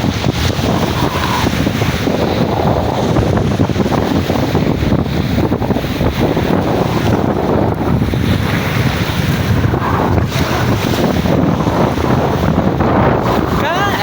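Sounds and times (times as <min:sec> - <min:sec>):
sea waves rushing: 0:00.0 - 0:14.0
wind buffeting microphone: 0:00.0 - 0:14.0.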